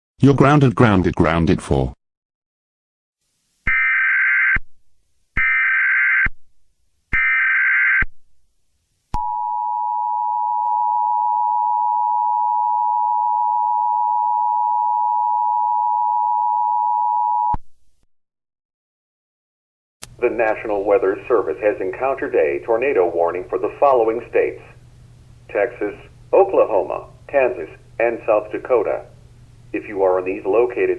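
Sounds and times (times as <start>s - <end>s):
data header bursts: 20.2s - 30.9s.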